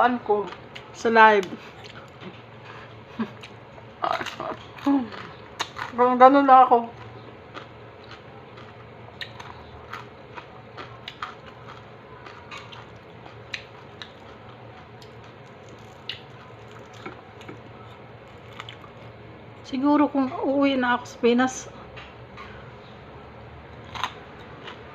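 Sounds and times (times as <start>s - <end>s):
faint steady hum: 0.0s - 24.9s
chewing crispy food: 0.4s - 6.2s, 6.8s - 19.2s, 23.7s - 24.9s.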